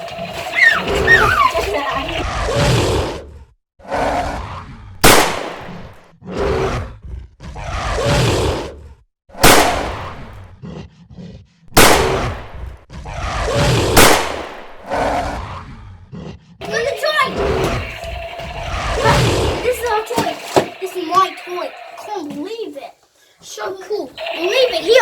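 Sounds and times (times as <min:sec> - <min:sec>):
animal roars and growls: 0:00.0 - 0:22.2
loud gunshot-like bangs: 0:05.0 - 0:06.0, 0:09.4 - 0:10.3, 0:11.8 - 0:12.6, 0:13.9 - 0:14.8.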